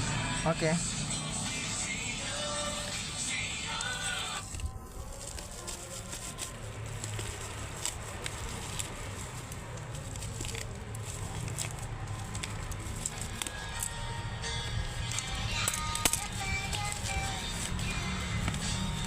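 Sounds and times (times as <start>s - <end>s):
hands handling flashlight packaging: 3.8s - 18.9s.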